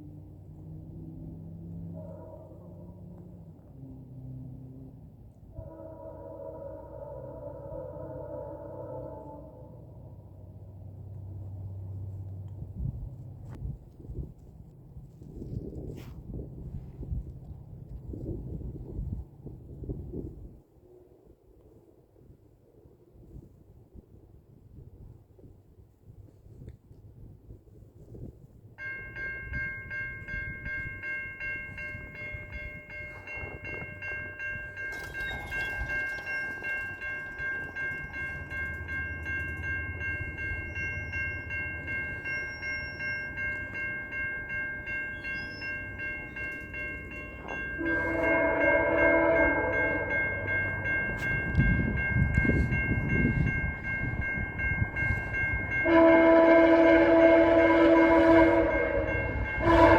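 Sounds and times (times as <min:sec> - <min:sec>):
train horn chord: 0:05.5 - 0:09.8, 0:46.6 - 0:52.7, 0:55.7 - 0:59.9
diesel train rumble: 0:28.6 - 0:59.9
level-crossing bell ringing: 0:28.8 - 0:59.9.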